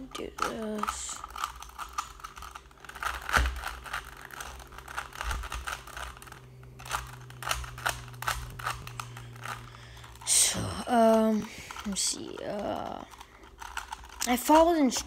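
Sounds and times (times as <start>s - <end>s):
puzzle cube clicking: 0.2s - 10.2s.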